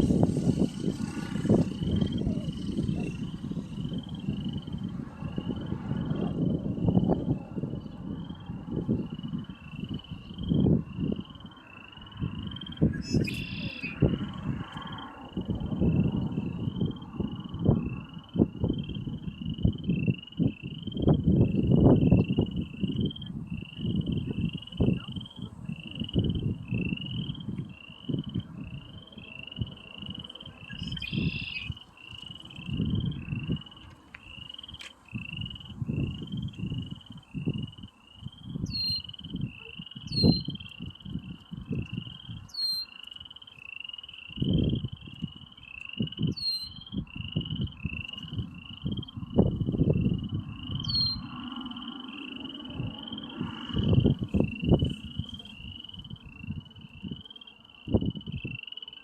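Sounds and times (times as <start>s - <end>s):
frogs trilling: 0.0s - 59.0s
wind rumbling on microphone: 0.0s - 59.0s
bird high call: 12.7s - 14.2s, 28.8s - 32.8s, 38.6s - 40.8s, 41.9s - 44.2s, 45.6s - 48.3s, 50.8s - 51.4s.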